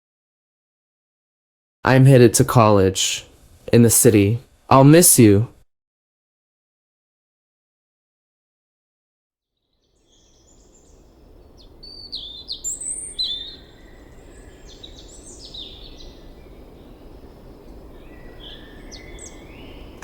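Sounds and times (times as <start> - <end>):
low background hiss and rumble: 1.9 - 5.6
birds chirping and calling: 10.1 - 17.3, 18.0 - 20.0.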